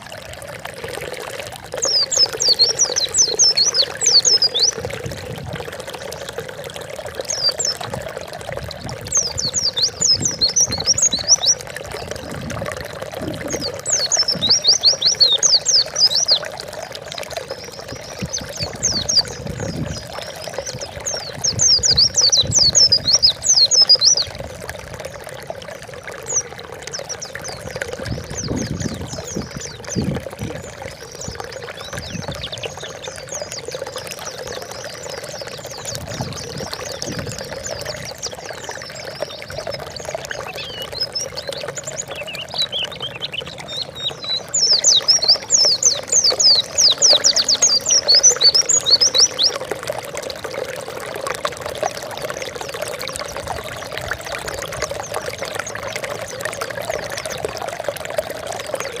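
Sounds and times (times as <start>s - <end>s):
pouring trickling water: 0.0s - 59.0s
white-eye bird singing: 1.8s - 4.8s, 7.2s - 7.9s, 9.1s - 12.4s, 13.3s - 16.6s, 17.4s - 24.4s, 26.2s - 49.6s.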